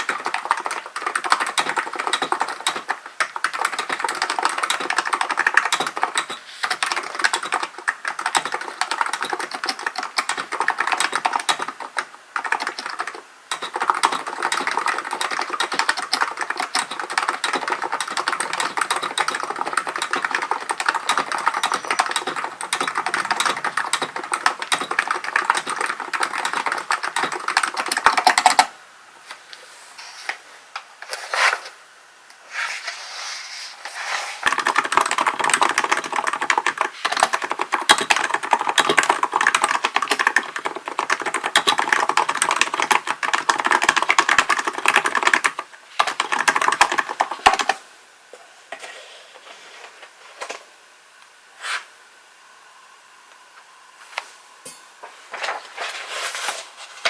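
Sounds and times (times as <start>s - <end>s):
fast typing on a keyboard: 0.0s - 28.7s, 34.4s - 47.8s.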